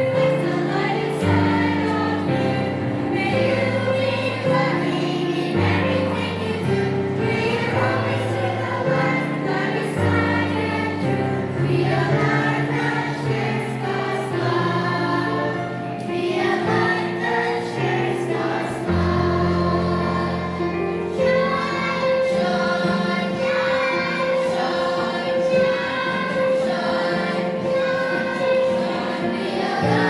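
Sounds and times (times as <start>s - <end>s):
children's choir singing: 0.0s - 30.0s.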